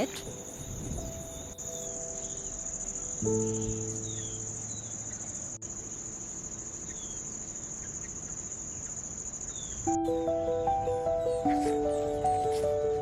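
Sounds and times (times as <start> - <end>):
crickets trilling: 0.0 - 13.0
background music: 9.9 - 13.0.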